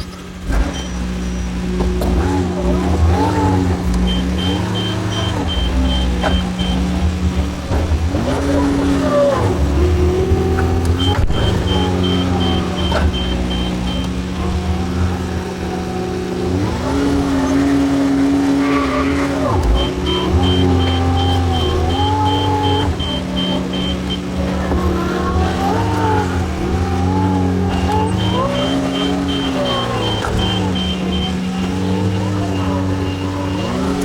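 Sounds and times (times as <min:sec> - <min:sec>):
backhoe diesel engine under load: 0:00.0 - 0:34.0
high pulsing beep: 0:04.0 - 0:07.0, 0:10.7 - 0:14.6, 0:19.8 - 0:24.3, 0:27.6 - 0:33.9.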